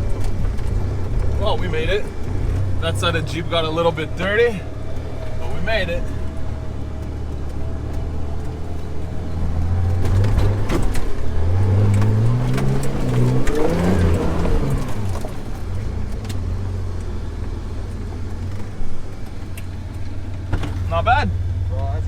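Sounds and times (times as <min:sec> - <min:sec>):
off-road vehicle engine revving: 0:00.0 - 0:22.0.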